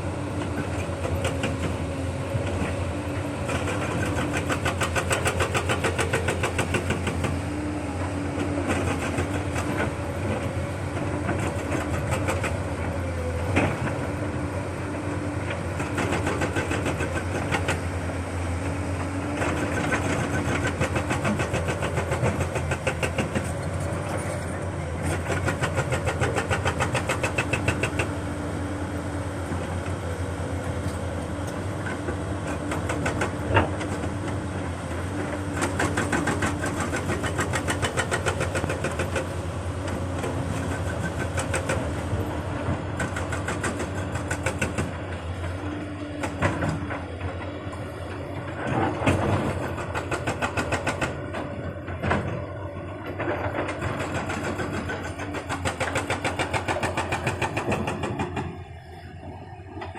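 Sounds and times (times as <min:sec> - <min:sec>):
excavator diesel engine running: 0:00.0 - 0:59.9
machine knocks and clanks: 0:53.1 - 0:58.6.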